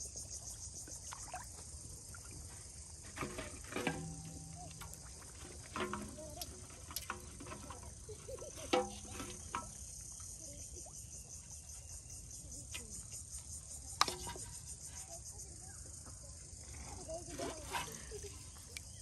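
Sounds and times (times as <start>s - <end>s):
insects chirring: 0.0s - 19.0s.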